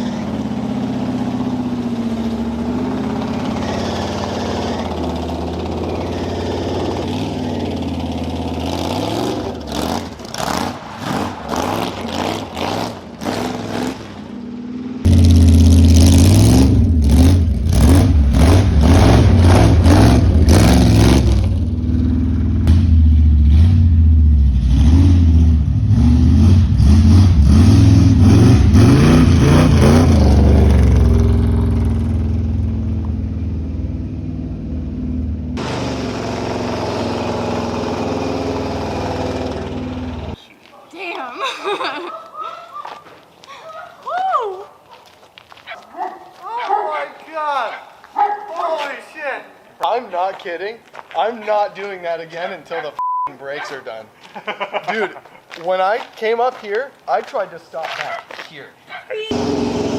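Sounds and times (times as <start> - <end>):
engine revving: 0.0 - 40.4, 59.3 - 59.9.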